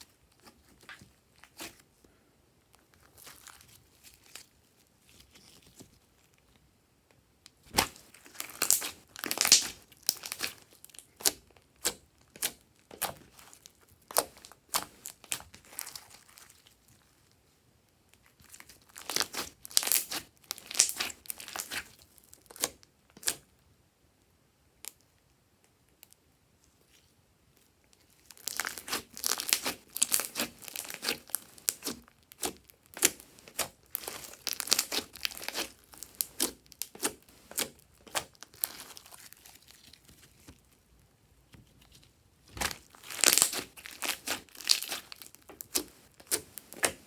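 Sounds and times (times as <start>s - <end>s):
slime crackling and popping: 7.6s - 16.8s, 18.4s - 23.4s, 28.2s - 40.6s, 42.5s - 47.0s.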